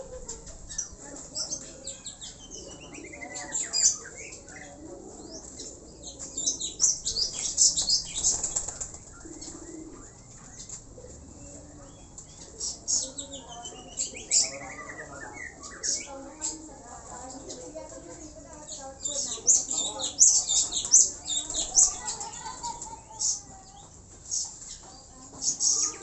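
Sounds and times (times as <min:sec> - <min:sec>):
pigeons flapping wings: 0:07.7 - 0:09.6.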